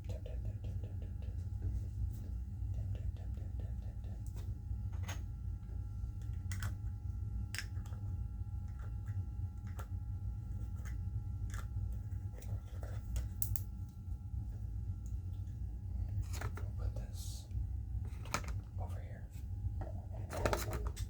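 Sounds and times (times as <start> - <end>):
low hum: 0.0 - 21.0
small objects clicking and tapping: 7.5 - 8.0, 13.1 - 13.7.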